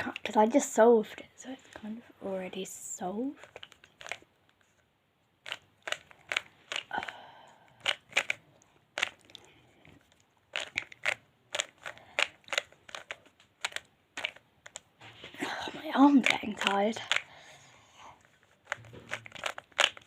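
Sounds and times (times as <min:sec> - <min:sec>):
puzzle cube layers clicking: 0:05.4 - 0:07.2, 0:07.8 - 0:08.4, 0:09.0 - 0:09.4, 0:10.5 - 0:14.9, 0:16.0 - 0:17.3, 0:18.6 - 0:20.0.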